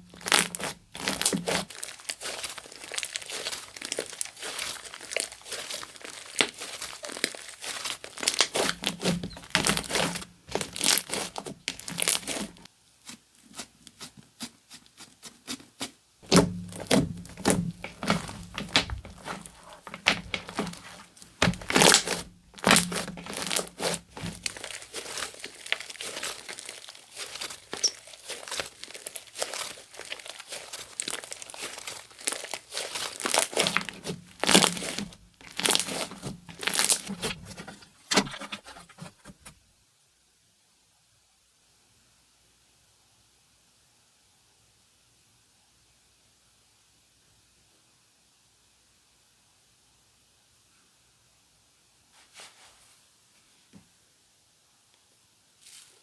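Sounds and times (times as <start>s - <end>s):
slime crackling and popping: 0.0s - 12.7s, 15.4s - 37.4s.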